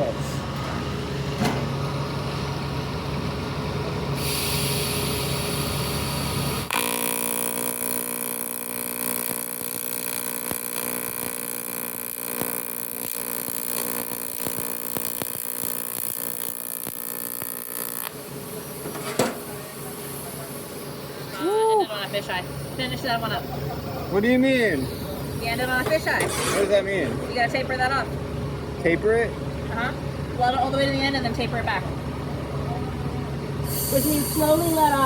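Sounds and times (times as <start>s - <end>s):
steady low hum: 0.0s - 35.0s
welding arc buzzing: 4.1s - 26.8s, 33.6s - 35.0s.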